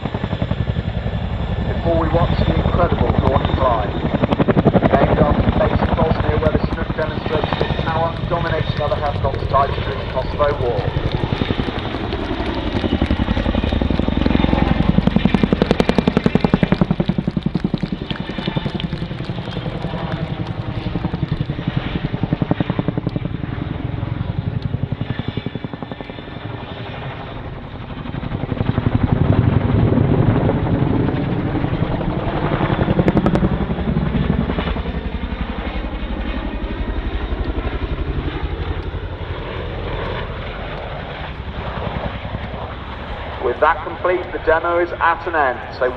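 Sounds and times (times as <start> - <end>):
helicopter turbine noise: 0.0 - 45.9
helicopter rotor blade slap: 1.6 - 24.9.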